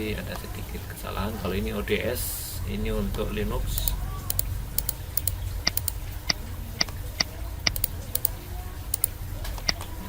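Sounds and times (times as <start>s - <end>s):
low steady hum: 0.0s - 10.0s
mouse and keyboard clicks: 3.8s - 9.8s.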